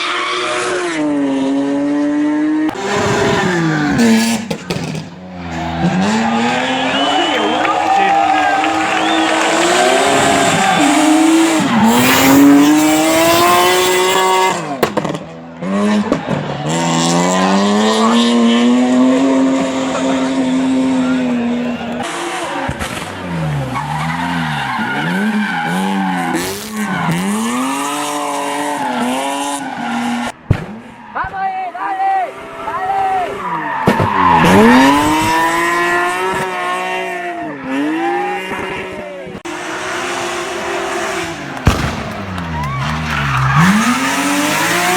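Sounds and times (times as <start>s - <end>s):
car engine revving hard: 0.0s - 30.9s, 34.2s - 44.9s
tyres squealing: 2.7s - 14.9s, 16.0s - 22.0s, 39.5s - 44.9s
exhaust cracks: 2.7s - 23.9s, 39.5s - 44.9s
sharp crack: 41.2s - 44.9s.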